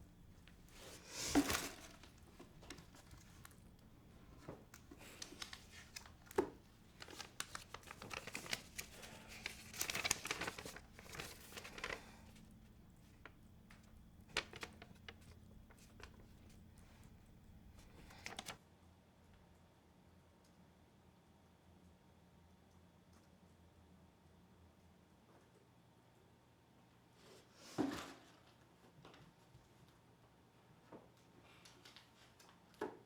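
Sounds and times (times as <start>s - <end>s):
rustling and crinkling handling: 0.0s - 18.6s.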